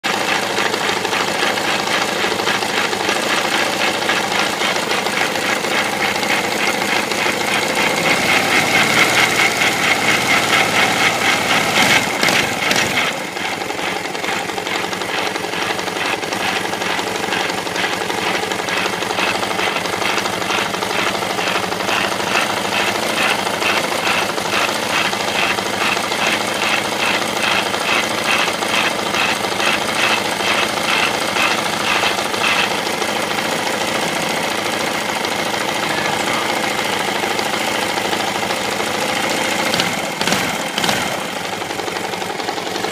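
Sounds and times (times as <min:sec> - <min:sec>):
engine clatter: 0:00.0 - 0:42.9
single-cylinder engine knocking: 0:00.0 - 0:42.9.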